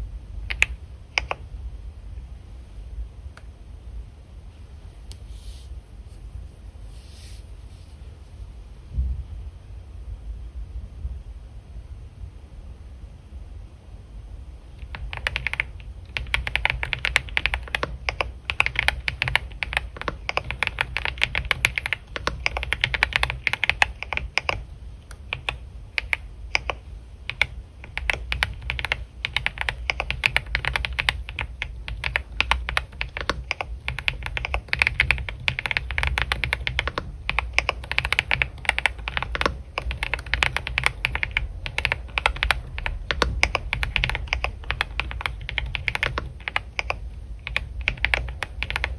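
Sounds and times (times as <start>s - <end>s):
steady low hum: 0.0s - 48.9s
computer keyboard typing: 0.5s - 1.5s, 14.8s - 48.9s.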